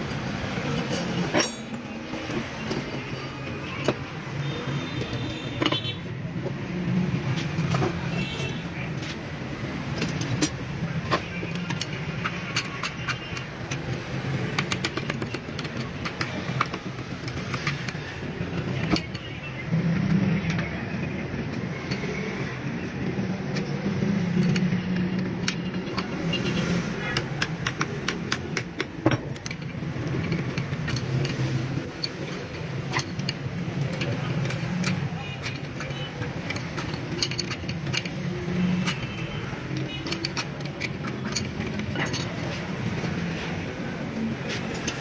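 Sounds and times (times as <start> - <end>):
metal tools clinking: 0.8 - 4.5, 24.3 - 43.5.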